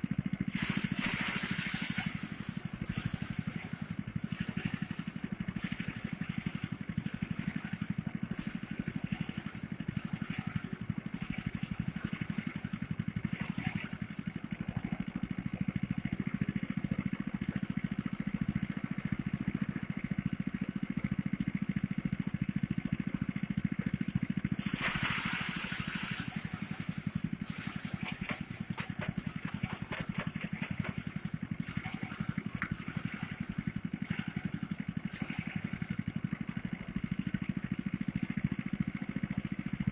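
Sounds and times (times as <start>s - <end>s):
small engine running: 0.0s - 39.9s
loud hissing rush: 0.5s - 2.6s, 24.6s - 26.8s.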